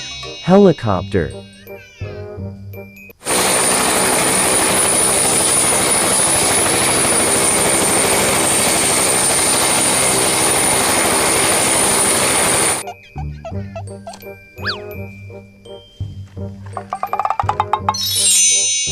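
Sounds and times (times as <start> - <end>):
helicopter running: 3.2 - 15.1.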